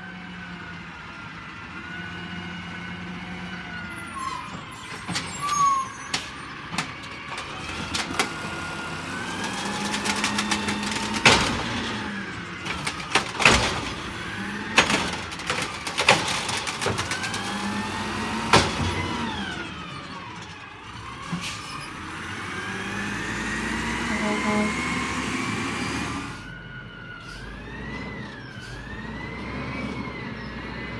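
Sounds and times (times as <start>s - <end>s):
truck engine revving: 4.9s - 30.9s
hydraulic whine: 17.2s - 26.8s.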